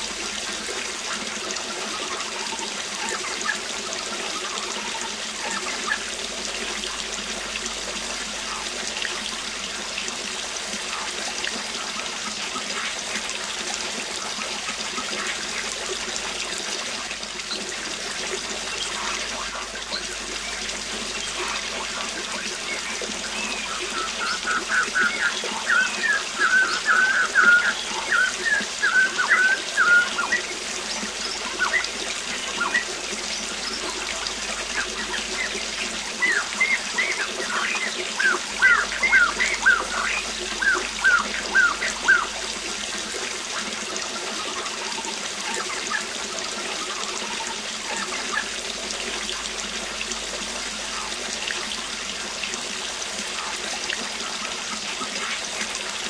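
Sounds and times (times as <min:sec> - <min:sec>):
waterfall rushing: 0:17.0 - 0:53.5
birds chirping: 0:18.4 - 0:42.4.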